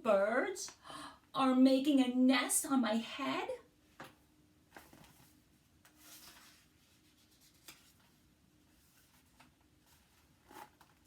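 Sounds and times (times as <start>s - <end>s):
faint paper rustle: 4.7s - 11.0s.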